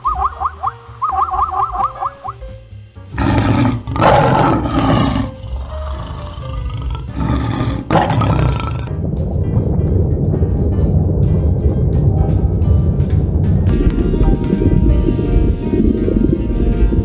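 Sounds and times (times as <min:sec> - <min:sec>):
background music: 0:00.0 - 0:17.0
large animal roaring: 0:03.2 - 0:09.0.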